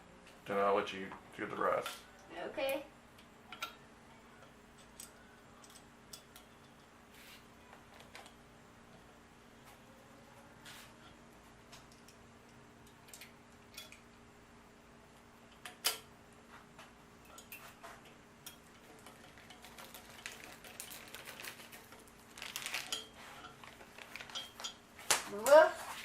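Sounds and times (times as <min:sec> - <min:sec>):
low steady hum: 0:00.0 - 0:26.0
small metal parts clicking: 0:18.4 - 0:24.8.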